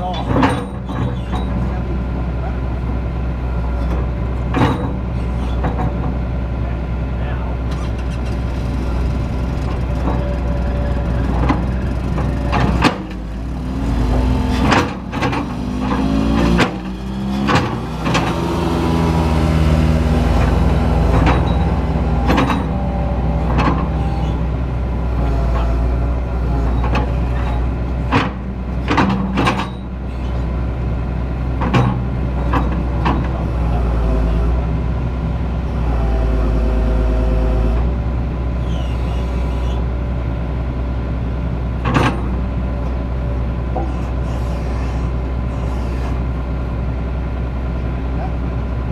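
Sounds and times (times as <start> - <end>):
excavator diesel engine: 0.0 - 48.9
sharp knocks and clanks: 0.1 - 1.7, 3.8 - 6.2, 11.2 - 13.3, 13.9 - 24.4, 26.6 - 29.9, 31.6 - 33.4.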